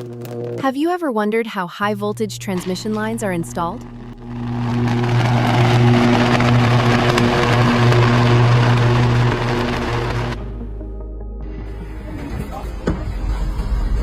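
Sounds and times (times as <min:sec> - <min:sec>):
low machine hum: 0:01.8 - 0:10.8.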